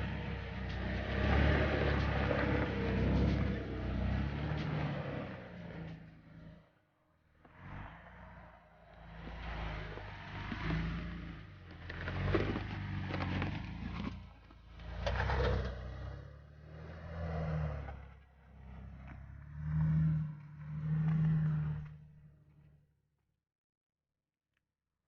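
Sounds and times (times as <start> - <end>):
off-road vehicle engine revving: 0.0 - 22.8
tyres crunching over gravel: 11.6 - 15.4.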